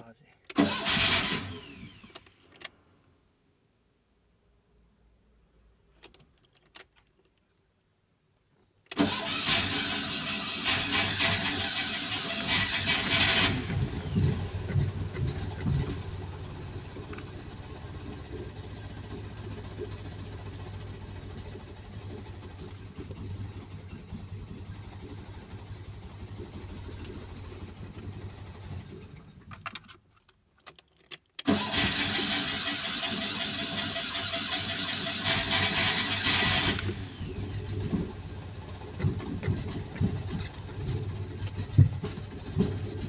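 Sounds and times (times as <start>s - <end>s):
engine cranking on starter: 0.5s - 2.6s, 8.9s - 30.0s, 31.4s - 43.0s
low engine sputtering: 8.9s - 29.8s, 31.5s - 43.0s.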